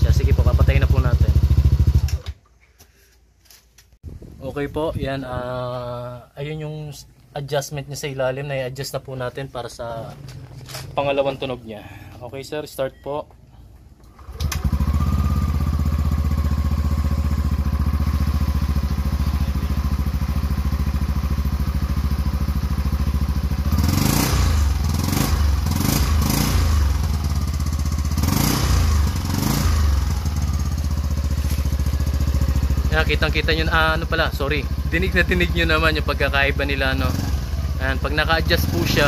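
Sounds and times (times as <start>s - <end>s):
scooter engine idling: 0.0s - 2.2s, 14.1s - 39.0s.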